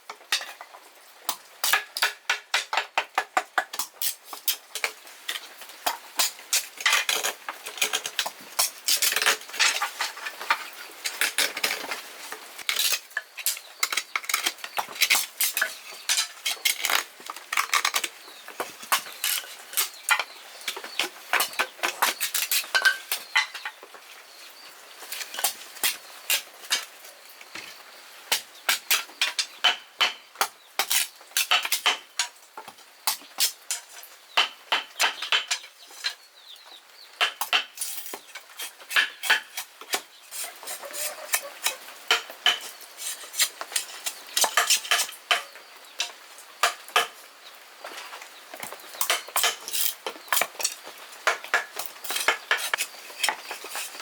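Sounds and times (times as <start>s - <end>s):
utensils clinking on pots and dishes: 0.3s - 0.7s, 1.6s - 11.9s, 12.6s - 23.8s, 37.2s - 47.2s, 48.6s - 54.0s.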